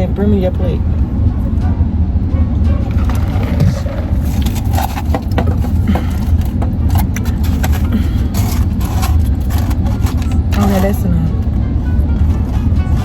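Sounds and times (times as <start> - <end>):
steady low rumble: 0.0 - 13.0
food containers crinkling and clicking: 2.9 - 11.0.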